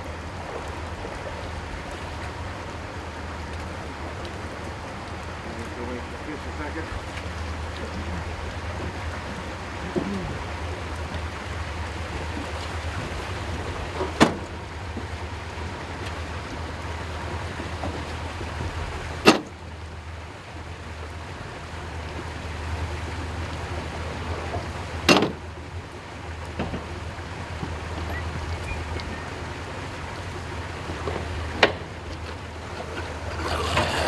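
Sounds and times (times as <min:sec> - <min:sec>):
low engine hum with hiss: 0:00.0 - 0:34.0.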